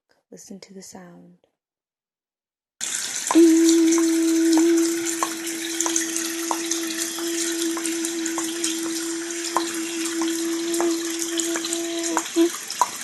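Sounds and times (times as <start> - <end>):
running water hiss: 2.8 - 13.0
steady humming tone: 3.3 - 12.5.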